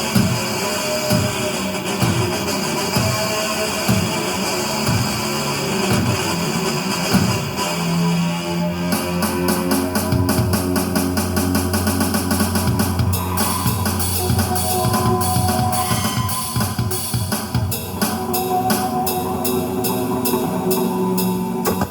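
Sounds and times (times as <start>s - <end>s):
rock music with drums and guitar: 0.0s - 7.6s.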